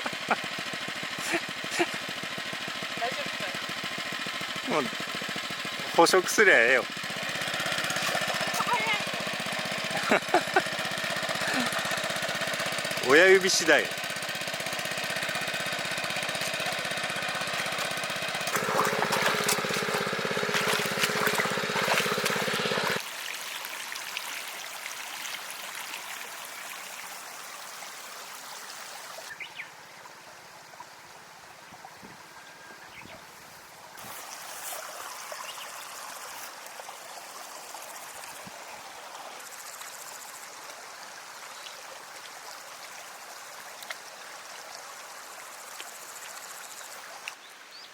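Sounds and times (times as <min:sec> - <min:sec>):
small engine running: 0:00.0 - 0:23.1, 0:34.0 - 0:41.5, 0:42.4 - 0:47.3
water trickling and flowing: 0:00.0 - 0:47.9.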